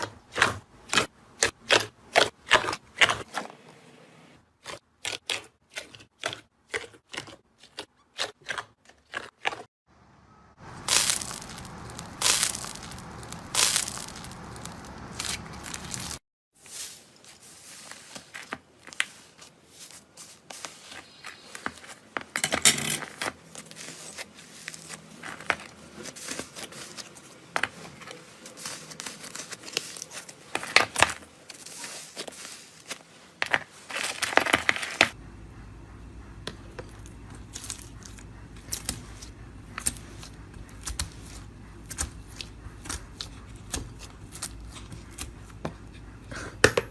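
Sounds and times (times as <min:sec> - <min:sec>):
slime squishing by hand: 0:10.6 - 0:16.2, 0:36.5 - 0:46.2
slime crackling and popping: 0:10.7 - 0:16.2.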